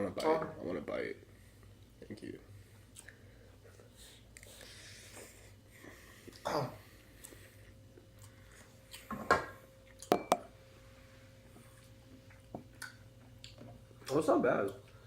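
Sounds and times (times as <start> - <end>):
person coughing: 6.5 - 6.8
spoon clinking against dish: 10.1 - 10.5.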